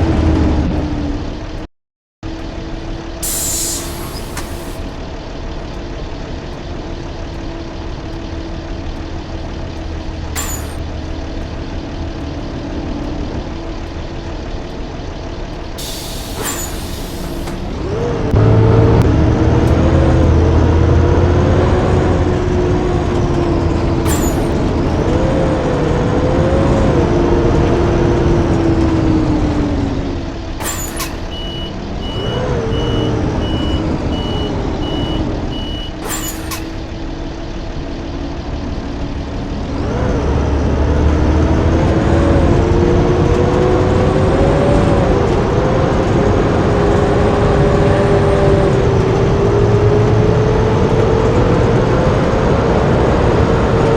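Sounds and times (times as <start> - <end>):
bus diesel engine running: 0.0 - 53.9
air brake hisses: 3.2 - 4.9, 10.3 - 10.8, 15.8 - 17.8, 24.0 - 25.0, 30.6 - 31.7, 35.9 - 36.9
evenly spaced beeps: 5.7 - 18.0, 23.6 - 25.8, 30.6 - 36.9.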